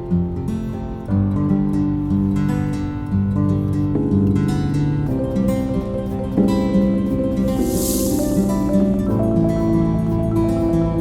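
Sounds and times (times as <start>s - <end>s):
plucked acoustic guitar: 0.0s - 11.0s.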